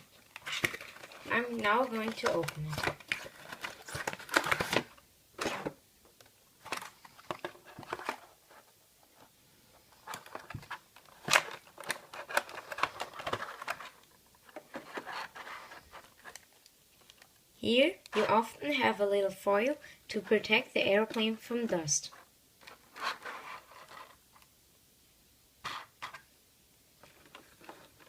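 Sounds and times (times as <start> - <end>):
packaging rustling: 0.0 - 17.4, 22.6 - 24.2, 27.0 - 28.0.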